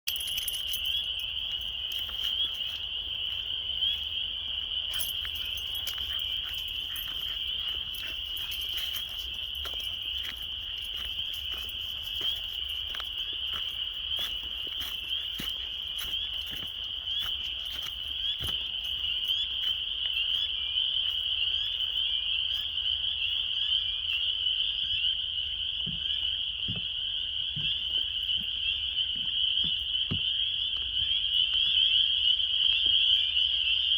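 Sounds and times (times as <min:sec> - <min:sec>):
frogs trilling in chorus: 0:00.1 - 0:33.9.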